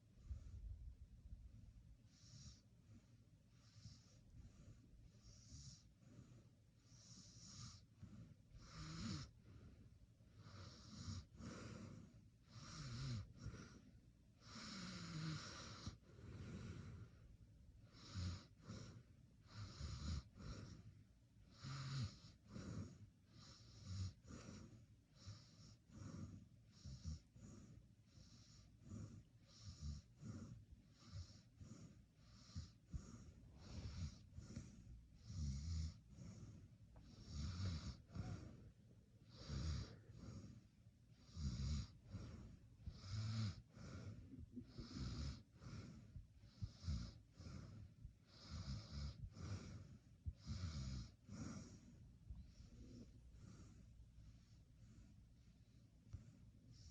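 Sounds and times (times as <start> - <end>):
person snoring faintly: 10.4 - 13.8, 14.4 - 17.1, 21.5 - 55.0.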